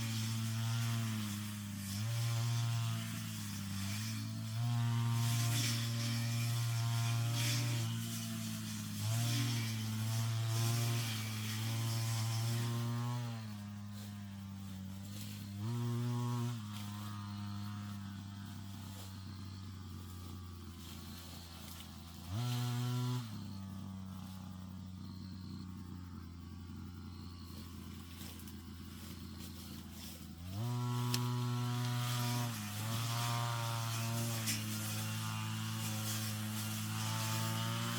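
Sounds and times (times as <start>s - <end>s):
brush cutter engine revving: 0.0s - 37.9s.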